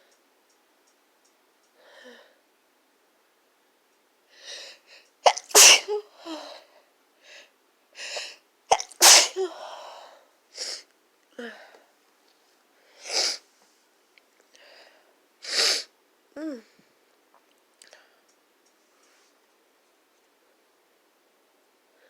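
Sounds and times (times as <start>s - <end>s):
person sneezing: 5.2s - 6.1s, 8.7s - 9.6s.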